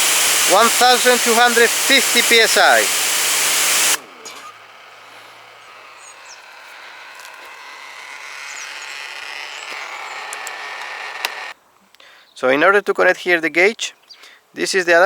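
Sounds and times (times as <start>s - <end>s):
pressure washer spraying: 0.0s - 11.6s
faint hiss: 0.0s - 12.2s.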